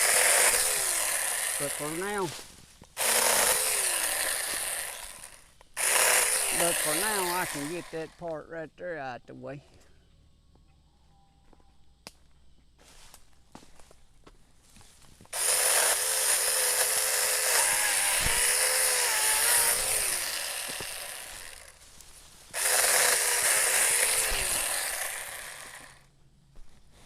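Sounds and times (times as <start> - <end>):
electric chainsaw cutting wood: 0.0 - 2.4, 3.0 - 8.2, 15.3 - 21.8, 22.5 - 26.1.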